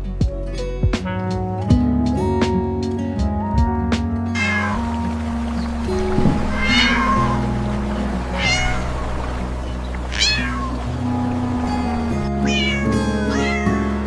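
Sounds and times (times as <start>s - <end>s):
background music with held notes: 0.0s - 14.0s
cat meowing: 4.4s - 4.8s, 6.4s - 7.4s, 8.4s - 9.0s, 10.1s - 10.8s, 12.4s - 14.0s.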